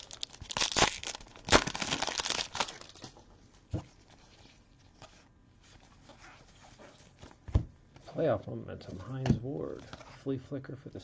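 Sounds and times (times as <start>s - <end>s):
foil wrapper crinkling and tearing: 0.0s - 3.1s.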